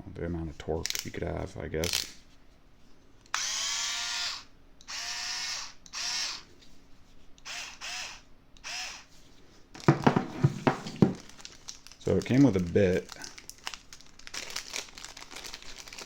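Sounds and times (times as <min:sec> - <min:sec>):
cordless screwdriver motor whirring: 0:03.3 - 0:06.5, 0:07.4 - 0:09.1.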